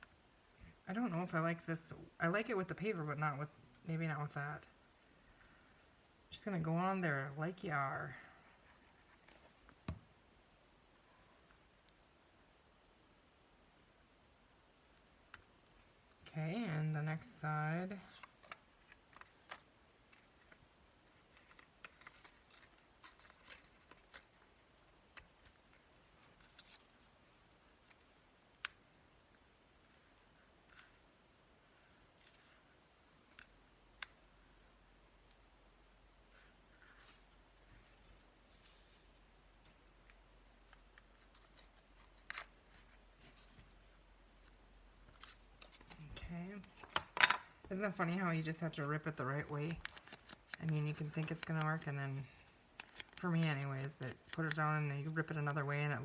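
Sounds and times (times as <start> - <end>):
paper rustling: 18.0 - 28.1, 36.3 - 47.0, 49.2 - 52.2, 52.8 - 55.6.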